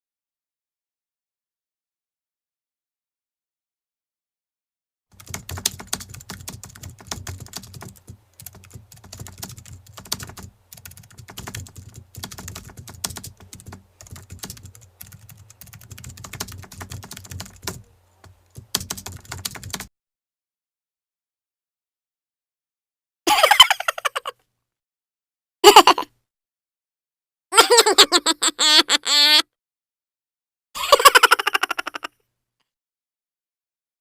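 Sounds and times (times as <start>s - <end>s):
fast typing on keyboard: 5.2s - 19.9s.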